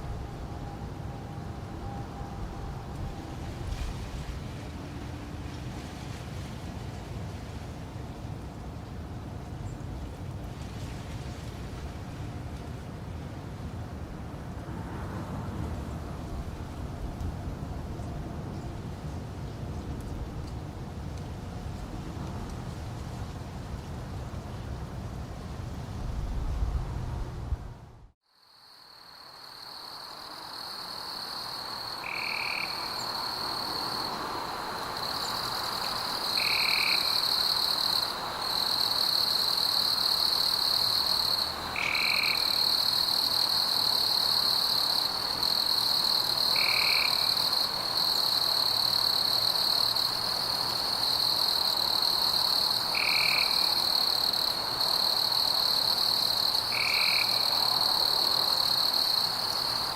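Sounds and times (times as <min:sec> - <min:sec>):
frogs and insects trilling: 0:28.3 - 0:59.9
short frog calls: 0:31.9 - 0:33.5, 0:41.5 - 0:42.9, 0:52.9 - 0:54.2, 0:55.7 - 0:57.7.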